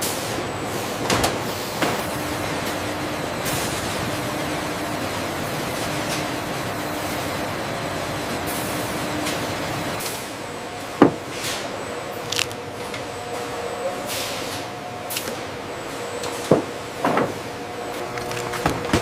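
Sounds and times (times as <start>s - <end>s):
food-processing machinery hum: 0.0s - 19.0s.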